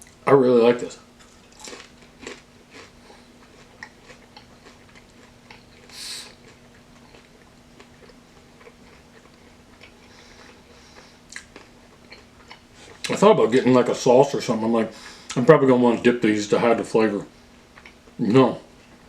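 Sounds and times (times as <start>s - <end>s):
faint steady hum: 0.0s - 19.0s
close-up chewing: 1.2s - 13.2s, 17.7s - 18.2s
short hiss: 5.9s - 6.4s.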